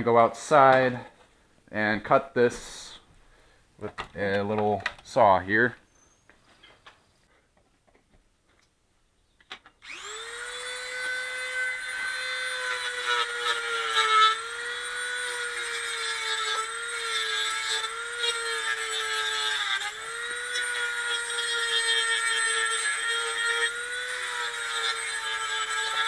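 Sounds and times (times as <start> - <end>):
electric saw cutting wood: 9.8 - 26.0.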